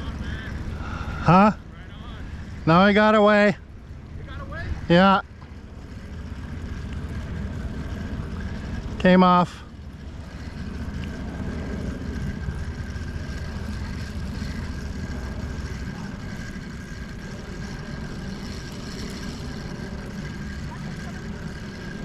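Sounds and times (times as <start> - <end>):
faint steady whine: 0.0 - 22.0
low engine rumble: 0.0 - 22.0.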